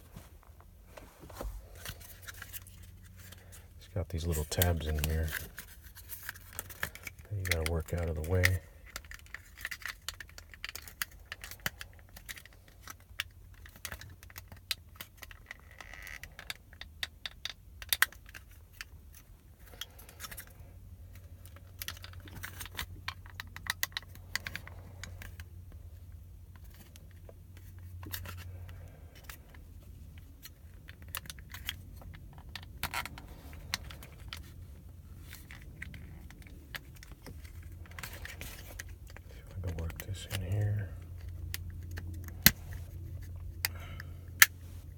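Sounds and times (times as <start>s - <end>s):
low steady hum: 0.0s - 44.9s.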